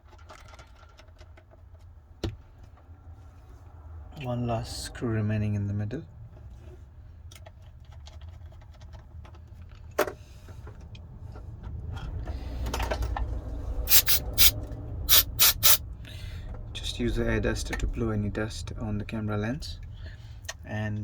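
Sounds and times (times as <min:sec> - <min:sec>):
screwdriver ticking: 0:13.9 - 0:14.5, 0:15.1 - 0:15.8
air duster blasts: 0:13.9 - 0:15.8.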